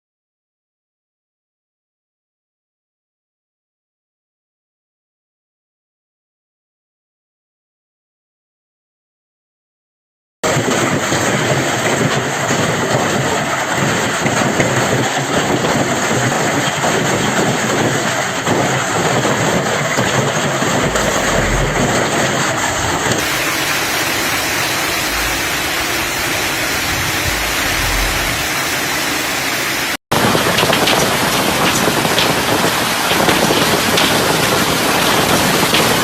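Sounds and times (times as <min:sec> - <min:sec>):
heavy rain downpour roar: 0:19.3 - 0:35.8
wind buffeting microphone: 0:20.1 - 0:33.7.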